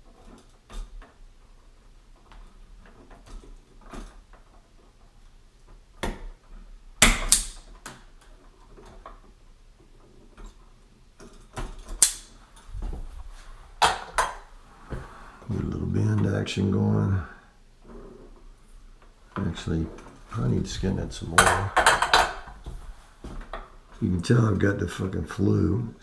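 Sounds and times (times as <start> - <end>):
wire stripper clicking: 7.1 - 8.0, 11.9 - 12.3.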